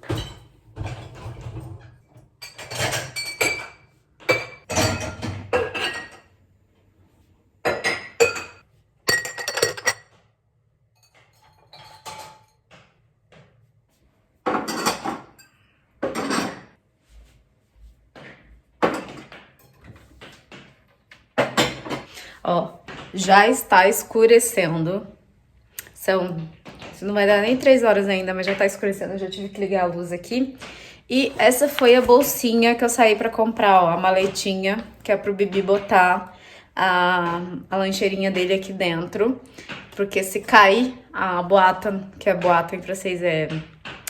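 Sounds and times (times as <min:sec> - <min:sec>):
glasses and dishes clinking: 0:00.0 - 0:06.3, 0:07.7 - 0:10.2, 0:11.0 - 0:12.6, 0:14.6 - 0:16.7.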